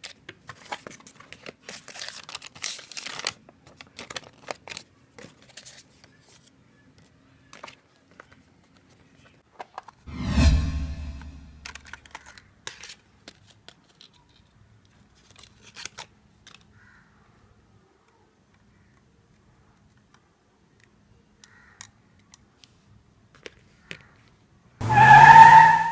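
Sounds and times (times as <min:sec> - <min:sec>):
packaging rustling: 0:00.5 - 0:05.9.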